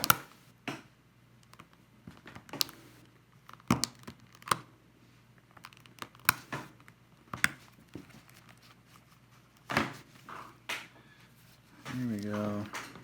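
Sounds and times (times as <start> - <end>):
sharp plastic clicks: 0.0 - 0.3.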